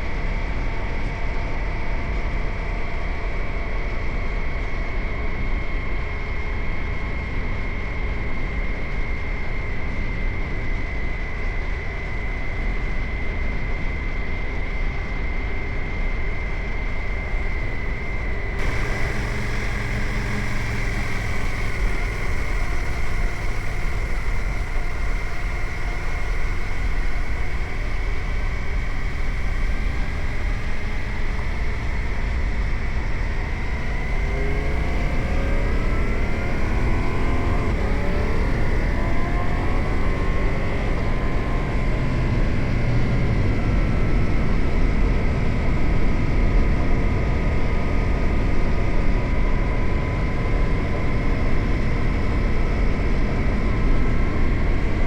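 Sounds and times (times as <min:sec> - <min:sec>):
motorcycle engine running: 0:17.1 - 0:43.1
road and wind noise: 0:17.1 - 0:48.5.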